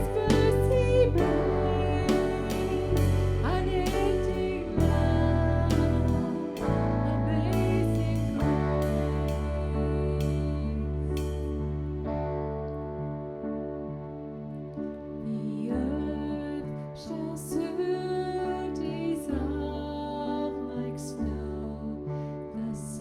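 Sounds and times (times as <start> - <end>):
bass notes: 0.0 - 13.9
held keyboard chords: 0.0 - 16.6.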